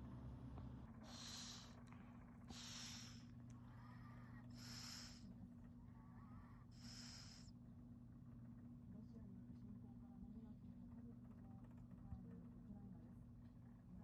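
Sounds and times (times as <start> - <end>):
faint whistling wheeze: 1.0 - 1.8, 2.5 - 5.3, 6.2 - 7.5
dog snoring: 6.6 - 7.5.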